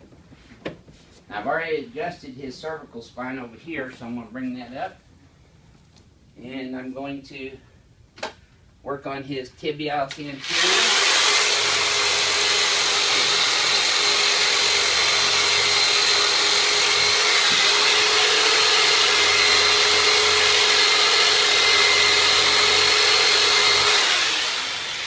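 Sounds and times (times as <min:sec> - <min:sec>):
electric massager motor whine: 0:10.5 - 0:25.0.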